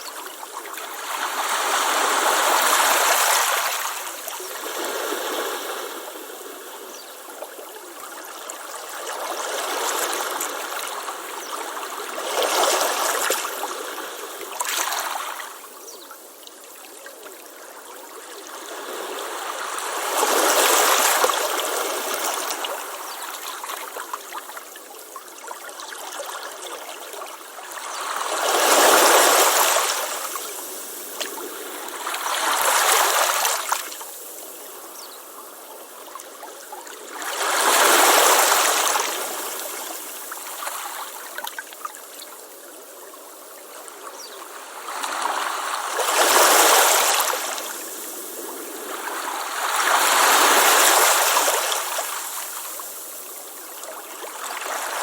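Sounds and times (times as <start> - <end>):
waves breaking on beach: 0.0 - 7.0, 27.4 - 35.4, 37.0 - 41.6, 43.9 - 55.0
soft wash of water: 0.0 - 55.0.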